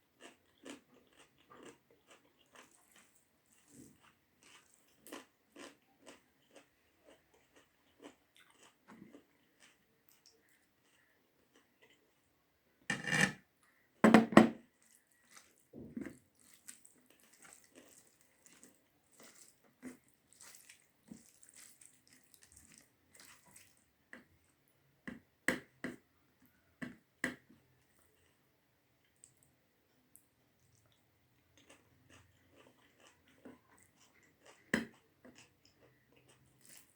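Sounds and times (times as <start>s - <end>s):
wet chewing smacks: 14.8s - 23.8s, 30.6s - 36.9s.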